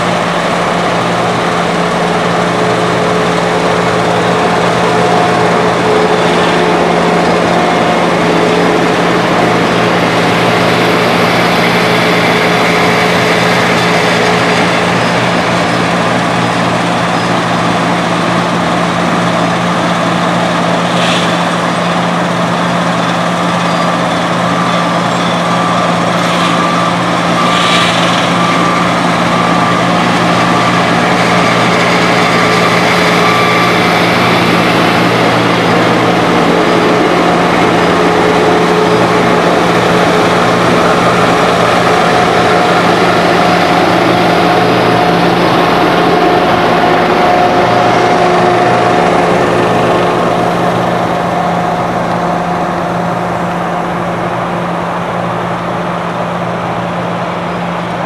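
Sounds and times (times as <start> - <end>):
heavy machinery diesel engines humming: 0.0 - 58.0.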